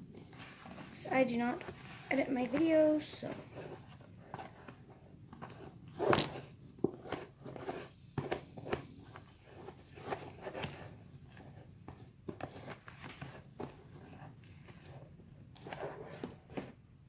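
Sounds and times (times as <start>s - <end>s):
utensil scraping in a bowl: 5.6s - 16.7s.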